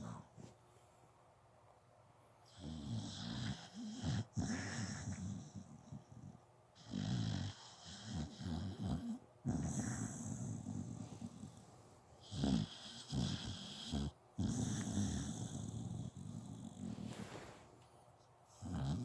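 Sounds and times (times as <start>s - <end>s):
pet snoring: 2.5s - 11.6s, 12.2s - 17.6s, 18.5s - 19.0s.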